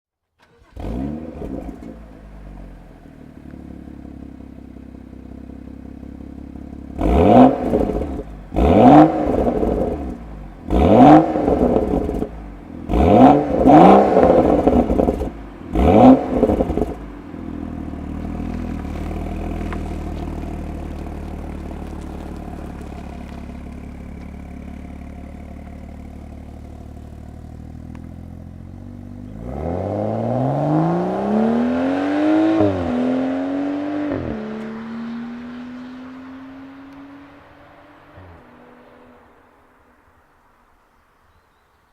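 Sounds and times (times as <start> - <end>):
car engine idling and revving: 0.4 - 41.2
exhaust pops and crackles: 13.2 - 15.4, 18.1 - 29.4.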